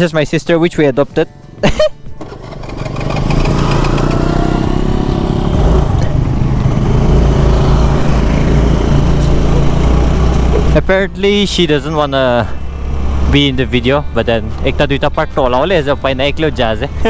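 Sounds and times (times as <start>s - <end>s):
scooter engine running: 2.2s - 10.8s.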